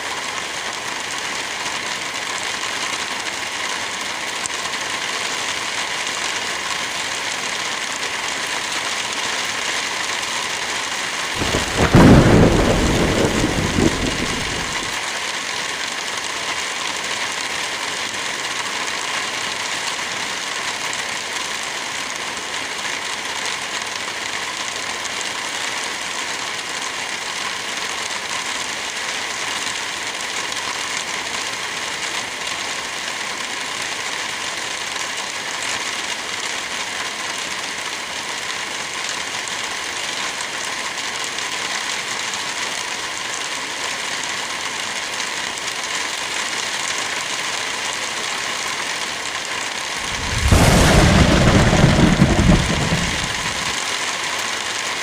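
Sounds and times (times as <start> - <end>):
heavy rain: 0.0 - 55.0
fireplace crackling: 11.4 - 15.0, 50.0 - 53.8.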